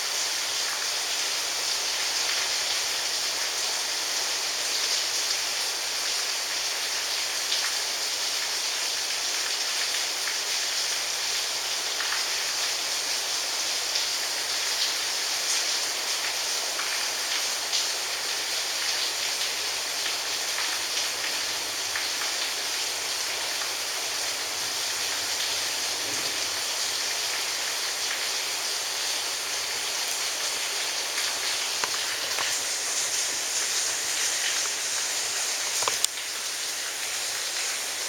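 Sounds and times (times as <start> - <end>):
steady rain falling: 0.0 - 38.0.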